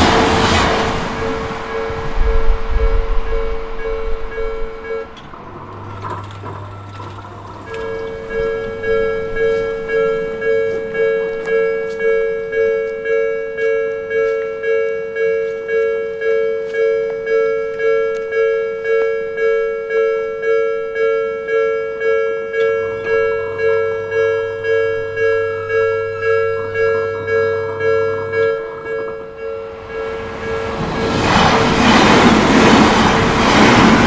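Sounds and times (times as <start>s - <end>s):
level crossing bell ringing: 7.5s - 30.9s.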